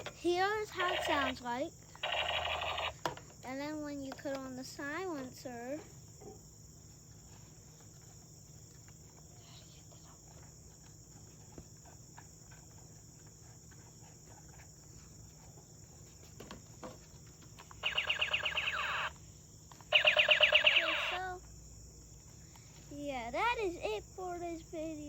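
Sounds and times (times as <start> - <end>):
toy gun rapid-fire shots: 0.8 - 1.3, 2.0 - 3.2, 17.8 - 19.1, 19.9 - 21.3.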